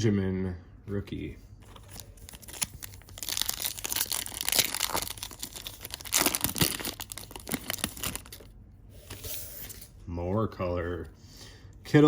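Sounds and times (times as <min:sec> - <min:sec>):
card pack wrapper crinkling and tearing: 0:01.6 - 0:08.5.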